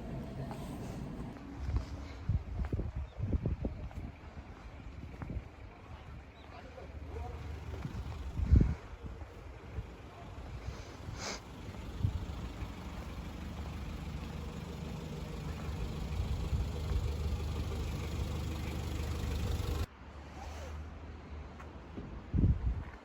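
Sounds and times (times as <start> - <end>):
car engine running: 0.0 - 2.2, 6.9 - 19.9.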